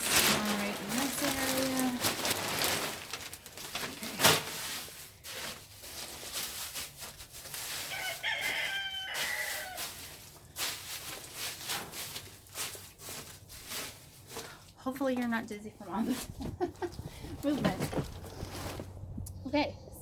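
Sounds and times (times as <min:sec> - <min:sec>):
pine shavings rustling: 0:00.0 - 0:14.6
rooster crowing: 0:07.9 - 0:10.0.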